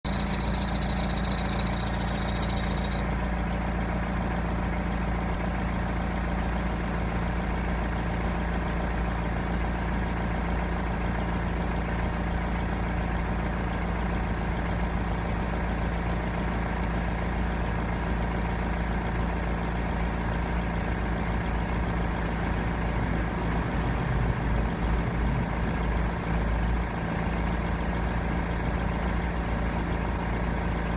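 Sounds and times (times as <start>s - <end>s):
diesel engine idling: 0.0s - 30.9s
high whistle: 0.1s - 3.0s.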